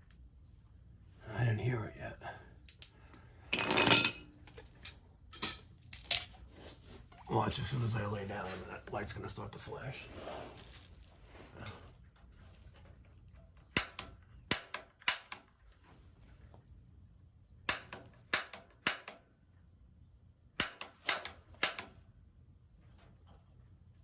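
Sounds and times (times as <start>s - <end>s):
piezo igniter clicks: 13.7s - 15.5s, 17.6s - 19.2s, 20.6s - 22.0s.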